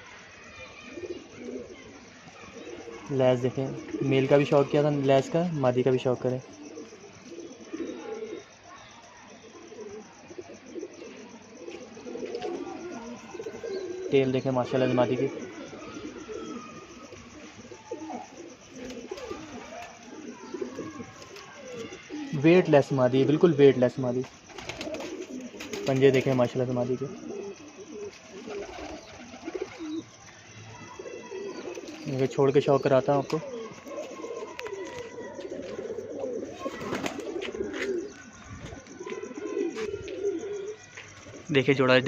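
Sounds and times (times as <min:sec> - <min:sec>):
pigeons cooing: 0:00.0 - 0:41.8.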